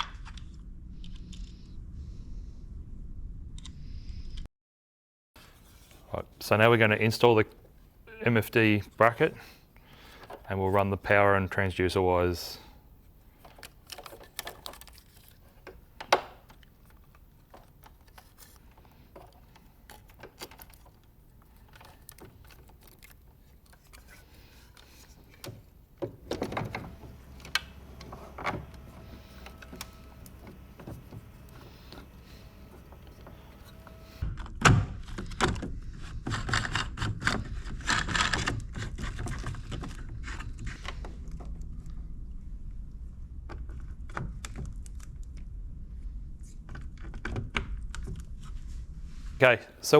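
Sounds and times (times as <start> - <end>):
parts knocking and clicking: 13.2 - 34.2.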